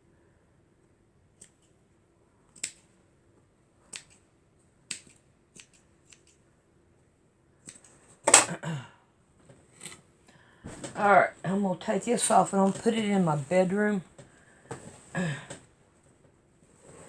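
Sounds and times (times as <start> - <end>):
sharp snips: 3.9 - 4.2, 4.9 - 6.4
fabric rustle: 16.6 - 17.0.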